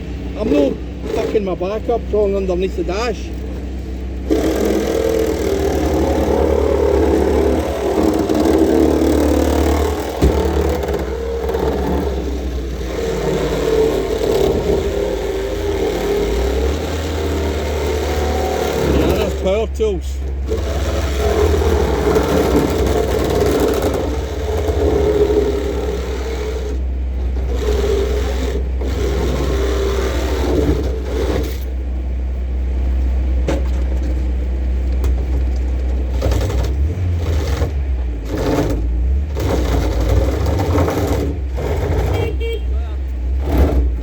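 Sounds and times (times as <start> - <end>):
low engine drone: 0.0 - 44.0
road noise: 0.0 - 44.0.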